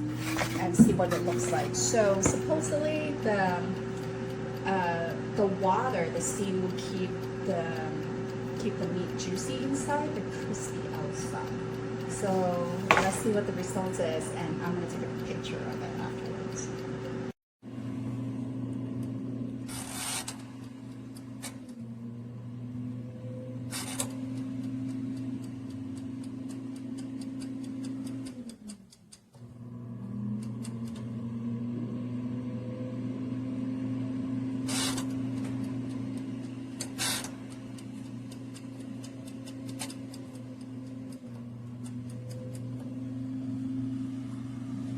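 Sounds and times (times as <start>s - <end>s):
air fryer fan humming: 0.0s - 28.2s, 29.4s - 44.9s.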